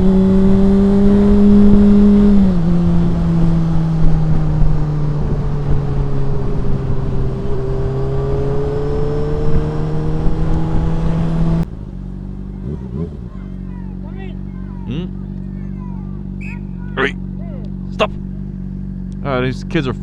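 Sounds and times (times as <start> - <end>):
wind noise: 0.0 - 11.7
motorcycle engine running: 0.0 - 20.0.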